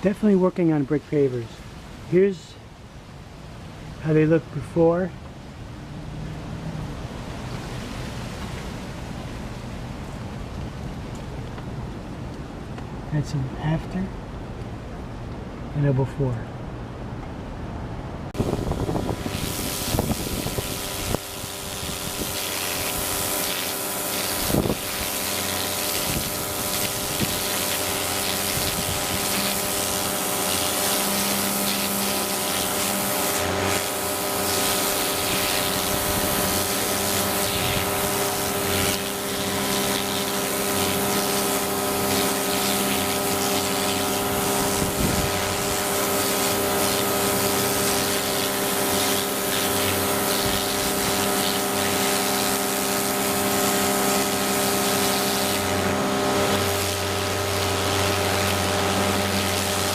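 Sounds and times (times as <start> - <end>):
pressure washer motor humming: 3.7 - 11.8, 18.2 - 59.9
water jet hissing: 18.4 - 59.9.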